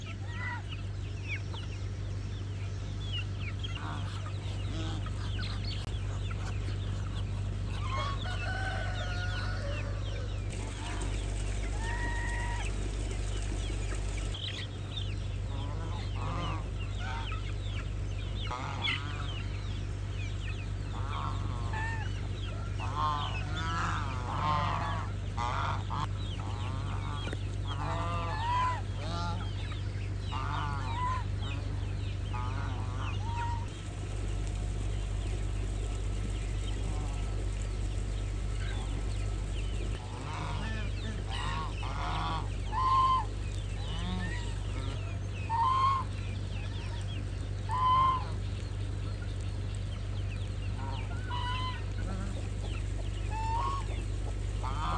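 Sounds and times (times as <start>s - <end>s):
steady low hum: 0.7s - 54.9s
chickens clucking: 3.7s - 14.7s, 32.5s - 46.1s, 50.8s - 54.9s.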